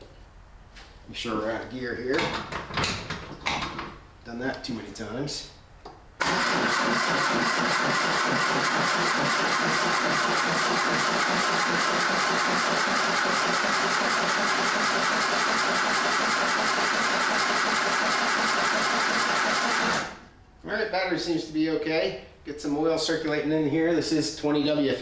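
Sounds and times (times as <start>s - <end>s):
car engine cranking on starter: 6.2s - 20.2s.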